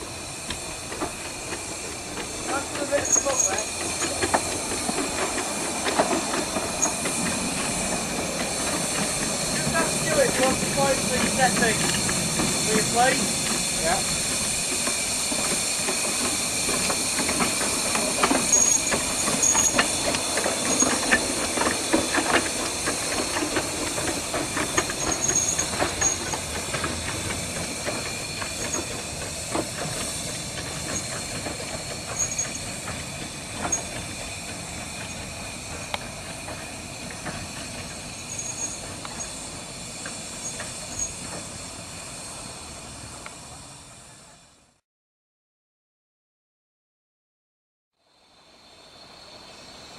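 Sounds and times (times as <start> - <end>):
train wheels clicking and clanking: 0.0 - 43.7
steam hissing: 0.0 - 44.8.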